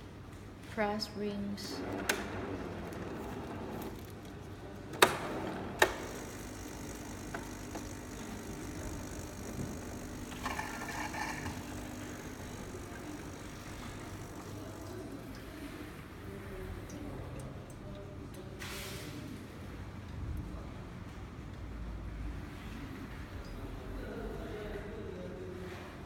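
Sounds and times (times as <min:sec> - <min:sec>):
coffee machine humming: 0:01.7 - 0:17.1
coffee machine clicks: 0:05.0 - 0:15.0.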